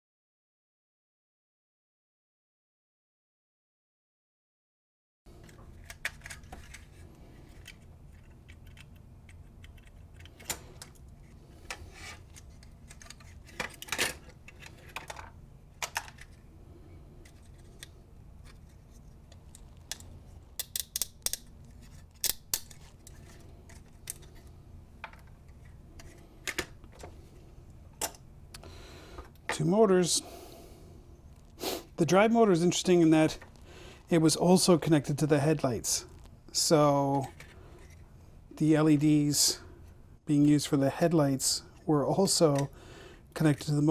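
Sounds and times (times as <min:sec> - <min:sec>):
plastic parts clicking and clattering: 0:05.3 - 0:16.4, 0:17.2 - 0:27.1
steady low hum: 0:05.3 - 0:43.9.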